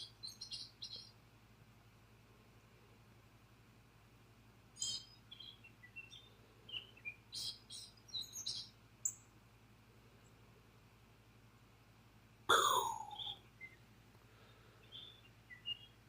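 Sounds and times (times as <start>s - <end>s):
bird chirping: 0.0s - 1.2s, 4.7s - 9.4s, 12.5s - 13.9s, 14.8s - 16.0s.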